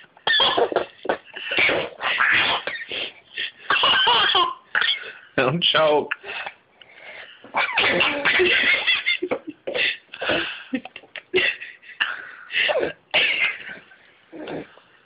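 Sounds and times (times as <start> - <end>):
children laughing: 7.5 - 11.9
woman mock sneezing: 7.6 - 8.4.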